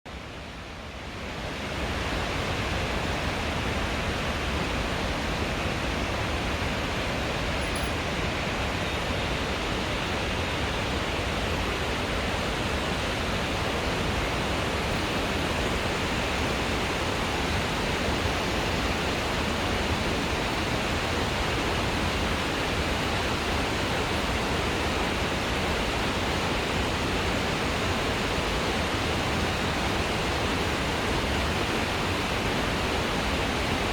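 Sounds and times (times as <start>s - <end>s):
waterfall falling water: 0.1s - 33.9s.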